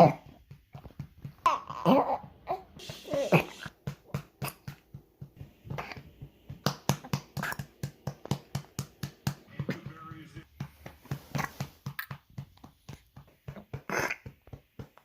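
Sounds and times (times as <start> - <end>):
baby cooing and whimpering: 1.4 - 3.7, 5.7 - 6.1, 13.8 - 14.3
light pats on back: 3.6 - 15.0.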